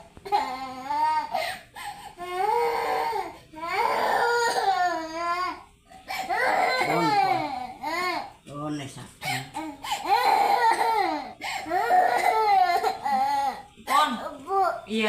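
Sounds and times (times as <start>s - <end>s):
infant crying: 0.2s - 8.3s, 9.6s - 13.7s.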